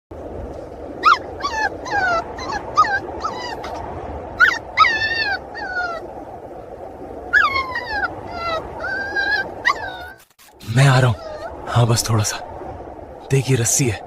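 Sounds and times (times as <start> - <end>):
puppy whimpering and yelping: 1.0 - 3.8, 4.4 - 6.1, 7.3 - 10.2, 11.1 - 11.6.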